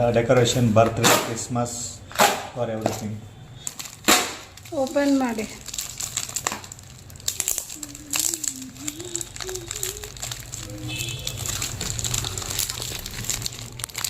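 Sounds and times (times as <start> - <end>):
plastic packaging crinkling: 2.9 - 14.0.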